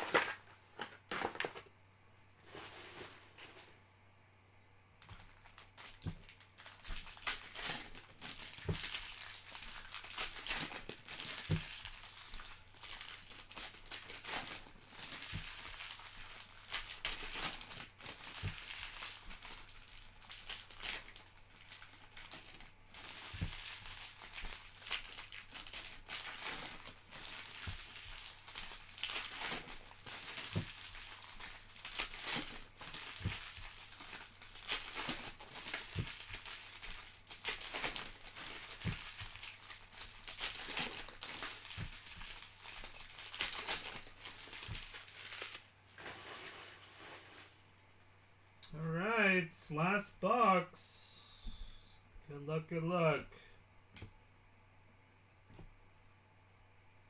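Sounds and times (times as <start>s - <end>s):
plastic wrappers crinkling and tearing: 0.0s - 1.7s, 5.0s - 48.1s.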